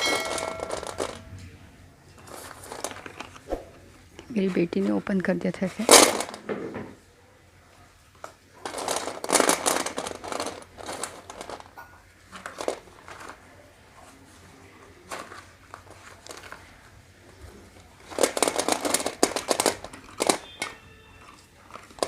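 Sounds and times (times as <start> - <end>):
packaging crinkling: 0.0 - 1.4, 8.6 - 13.6, 15.0 - 16.8, 17.8 - 22.0.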